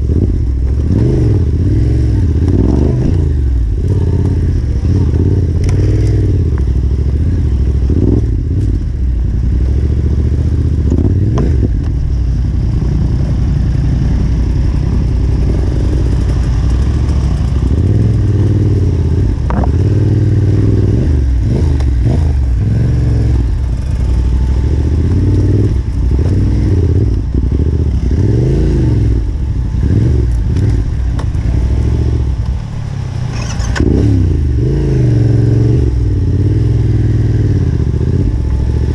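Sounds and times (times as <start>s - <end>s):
motorcycle engine revving: 0.0s - 38.9s
motorcycle clattering over rough ground: 14.7s - 27.8s, 29.2s - 34.2s.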